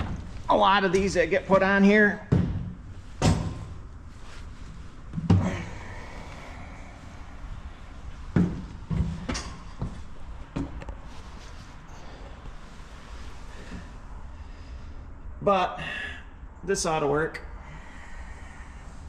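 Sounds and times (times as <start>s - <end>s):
metal clunks and knocks: 2.3s - 3.8s.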